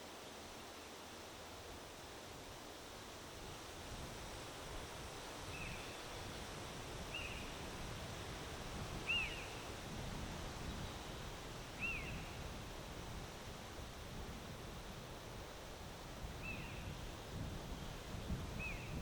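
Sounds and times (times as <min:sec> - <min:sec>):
wind gusting over microphone: 0:03.6 - 0:19.0
bird calls: 0:09.1 - 0:09.6, 0:11.8 - 0:12.4.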